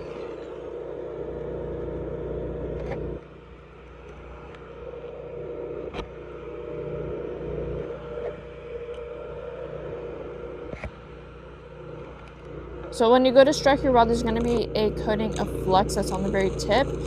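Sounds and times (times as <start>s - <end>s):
steady hum: 0.0s - 17.0s
welding arc crackling: 14.2s - 17.0s.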